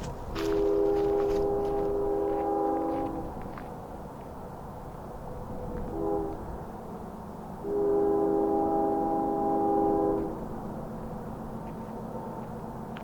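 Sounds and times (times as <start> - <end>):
locomotive air horn chord: 0.0 - 3.4, 5.9 - 6.7, 7.6 - 10.5.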